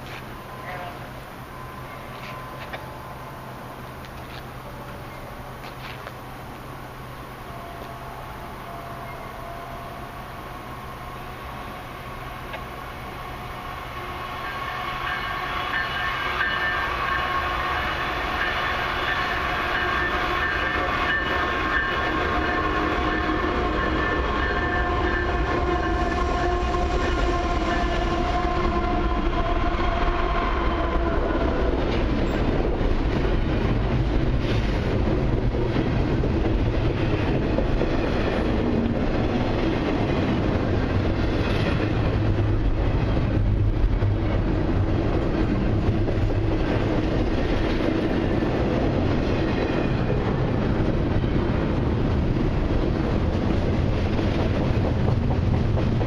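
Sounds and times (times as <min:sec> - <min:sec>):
wheels clattering on rail joints: 0:00.0 - 0:06.8, 0:31.7 - 0:56.0
locomotive rumble: 0:00.0 - 0:56.0
train horn: 0:00.4 - 0:01.2, 0:07.4 - 0:12.1, 0:14.0 - 0:32.5.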